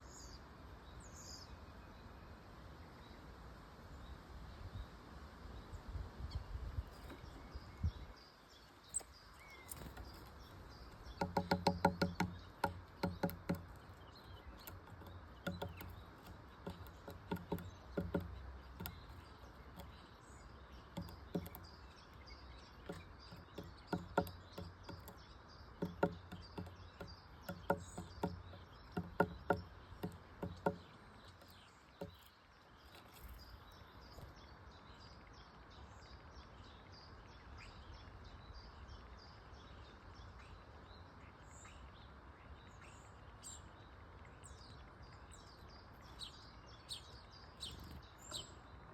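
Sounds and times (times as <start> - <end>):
faint high bird chirps: 6.2 - 48.9
rapid low-pitched bird calls: 8.9 - 35.2.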